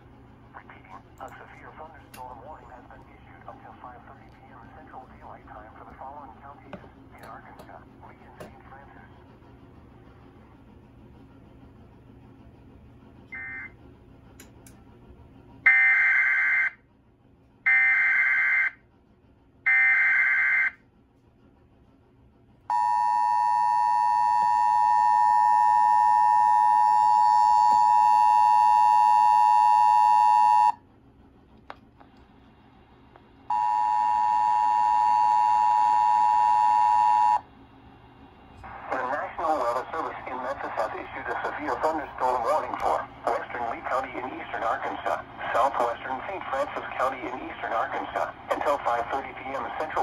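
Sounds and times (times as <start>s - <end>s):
two-tone attention signal: 33.5s - 37.4s.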